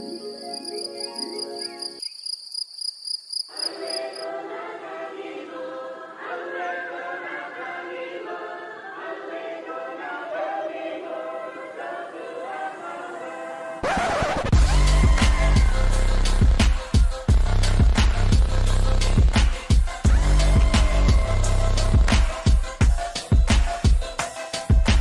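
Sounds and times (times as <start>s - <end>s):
high pulsing chirp: 0.0s - 2.3s
music with choir-like voices: 3.7s - 25.0s.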